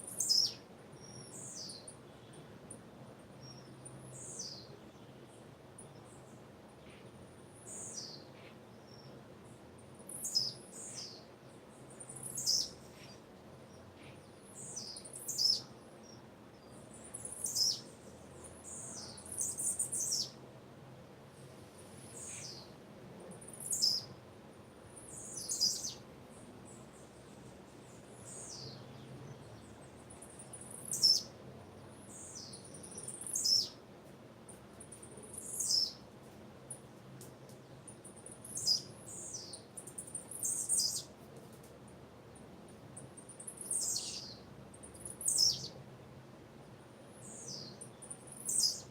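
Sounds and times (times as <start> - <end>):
bird chirping: 0.0 - 2.0, 3.4 - 7.0, 10.1 - 11.2, 11.8 - 13.8, 14.4 - 17.9, 18.6 - 20.4, 23.4 - 24.1, 25.0 - 27.1, 27.8 - 31.3, 31.9 - 33.8, 34.8 - 36.0, 37.7 - 41.1, 43.0 - 45.8, 47.2 - 48.9.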